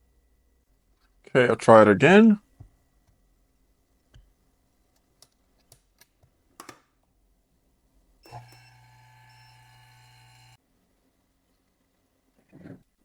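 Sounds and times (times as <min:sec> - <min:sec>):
machine motor humming: 0:08.3 - 0:10.6.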